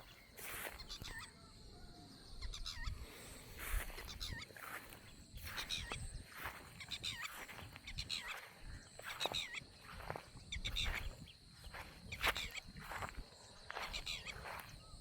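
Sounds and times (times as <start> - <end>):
birds chirping: 0.0 - 15.0.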